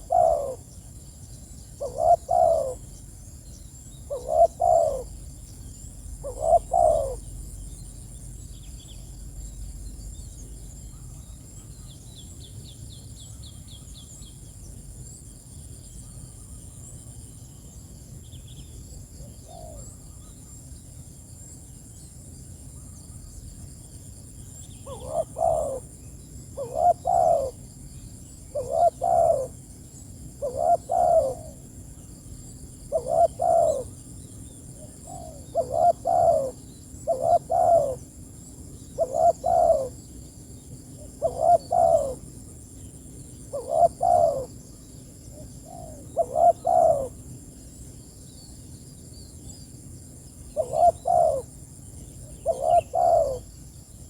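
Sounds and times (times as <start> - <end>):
dove cooing: 0.0 - 0.7, 1.8 - 3.0, 4.1 - 5.2, 6.2 - 7.3, 24.8 - 25.9, 26.6 - 27.6, 28.5 - 29.6, 30.4 - 31.7, 32.9 - 34.0, 34.8 - 38.2, 38.9 - 40.0, 40.9 - 42.4, 43.5 - 44.6, 45.3 - 47.2, 50.6 - 51.5, 52.2 - 53.4
small birds chirping: 0.0 - 17.6, 24.2 - 54.0.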